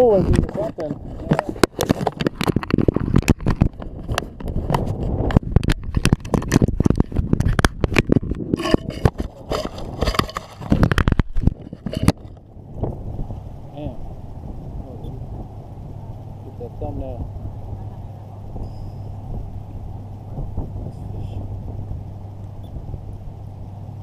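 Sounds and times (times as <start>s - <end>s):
low rumble: 0.0s - 24.0s
knocking and scraping: 0.2s - 12.4s.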